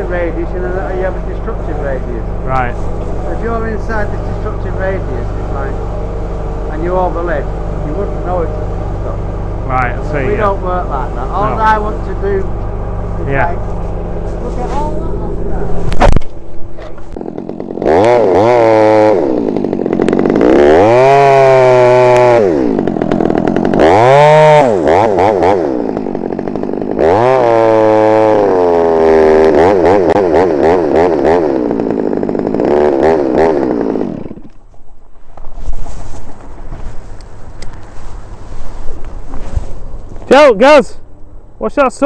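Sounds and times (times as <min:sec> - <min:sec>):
chainsaw revving: 0:00.0 - 0:34.6.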